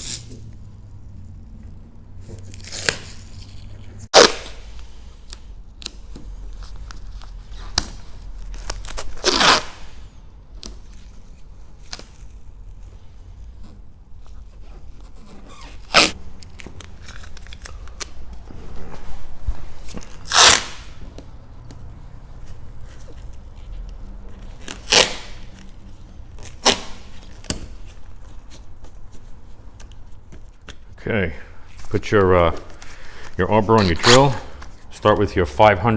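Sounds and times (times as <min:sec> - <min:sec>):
tape ripping: 0:00.0 - 0:00.6, 0:02.2 - 0:06.0, 0:06.7 - 0:10.0, 0:15.0 - 0:18.5, 0:19.8 - 0:21.3, 0:22.8 - 0:29.1, 0:31.8 - 0:35.3.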